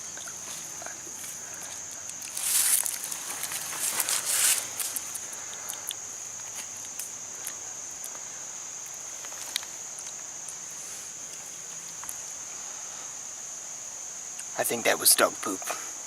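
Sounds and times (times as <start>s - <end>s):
high-pitched insect chorus: 0.0s - 16.0s
loud rustle: 0.4s - 5.8s.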